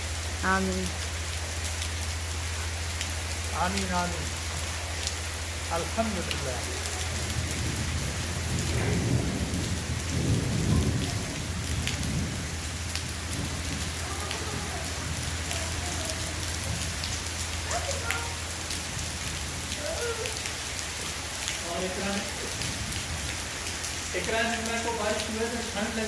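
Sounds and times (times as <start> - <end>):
heavy rain pouring: 0.0 - 26.0
raindrops ticking on surfaces: 0.0 - 26.0
low rumble: 6.7 - 17.7.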